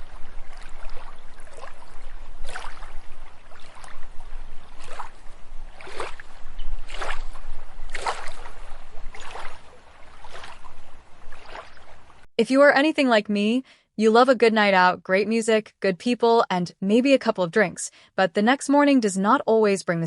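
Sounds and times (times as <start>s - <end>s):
moving water wash: 0.0s - 12.3s
water splashing and lapping: 0.0s - 12.3s.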